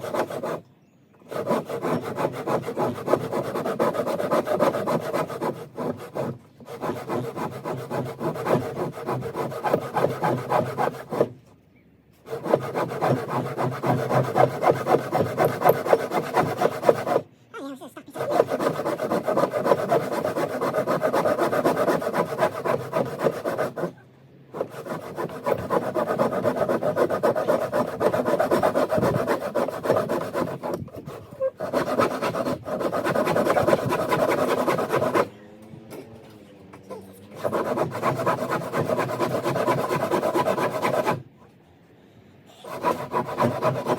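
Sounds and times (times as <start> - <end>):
hand saw cutting wood: 0.0 - 11.4, 12.2 - 17.3, 18.1 - 24.0, 24.6 - 35.4, 36.9 - 41.3, 42.6 - 43.9.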